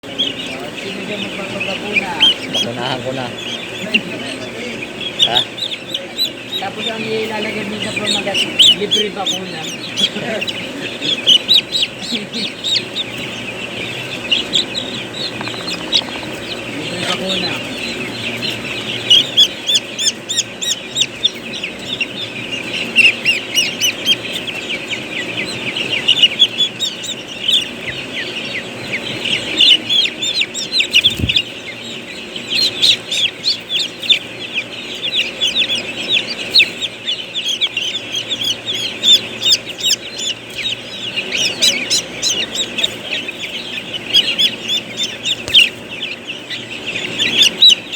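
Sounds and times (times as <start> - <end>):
chicks peeping: 0.0 - 47.9.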